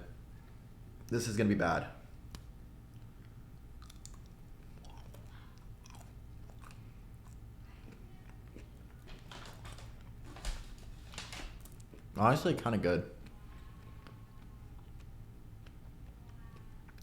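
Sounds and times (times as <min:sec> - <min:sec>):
chewing chocolate bar: 0:02.9 - 0:10.2, 0:13.2 - 0:17.0.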